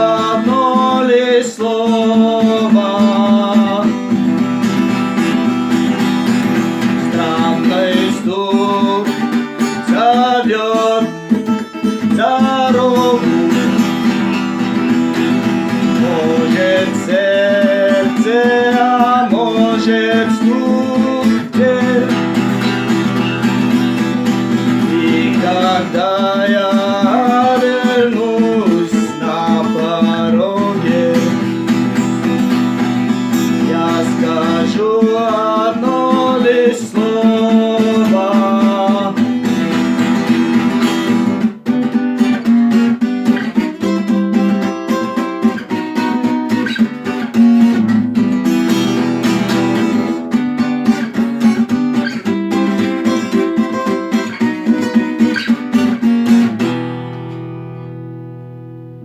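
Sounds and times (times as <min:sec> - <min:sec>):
person singing: 0:00.0 - 0:41.3
acoustic guitar strumming: 0:00.0 - 0:59.0.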